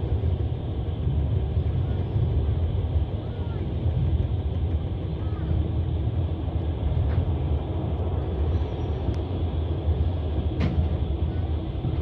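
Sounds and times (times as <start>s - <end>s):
train wheels rumbling on rails: 0.0s - 12.0s.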